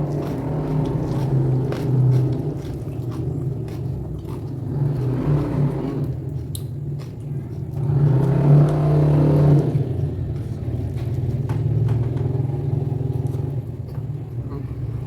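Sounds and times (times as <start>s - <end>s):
motor engine running: 0.0s - 6.4s.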